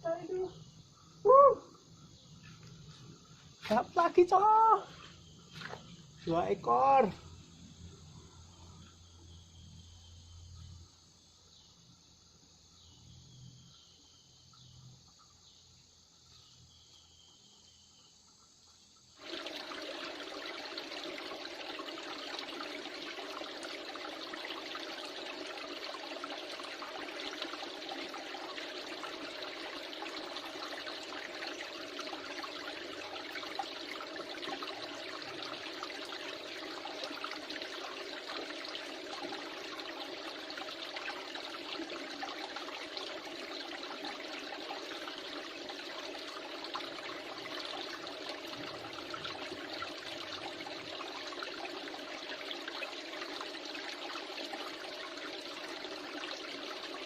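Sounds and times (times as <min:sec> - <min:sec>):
faint insect chirping: 0:00.0 - 0:57.0
river water flowing: 0:19.2 - 0:57.0.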